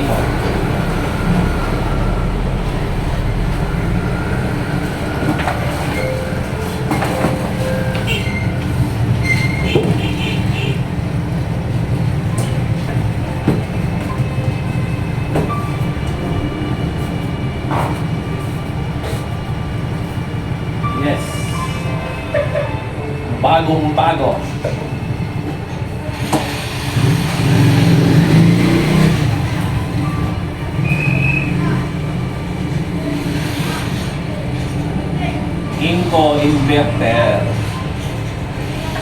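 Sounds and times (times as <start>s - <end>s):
steady low rumble: 0.0s - 9.2s, 10.7s - 20.9s.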